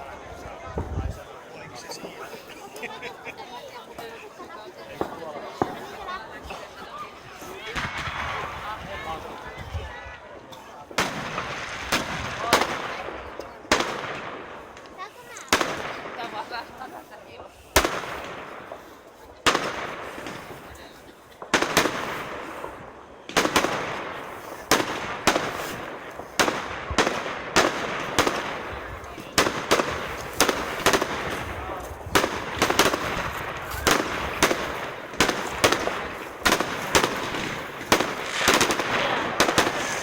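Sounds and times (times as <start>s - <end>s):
fireworks shells bursting: 10.9s - 40.0s.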